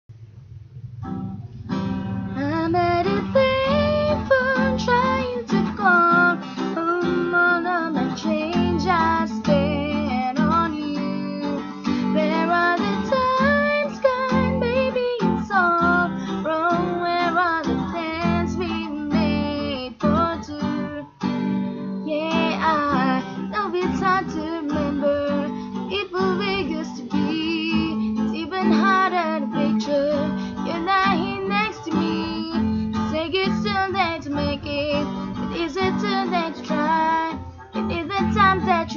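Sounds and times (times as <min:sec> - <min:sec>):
acoustic guitar strumming: 0:00.1 - 0:38.9
high voice singing: 0:01.7 - 0:21.2.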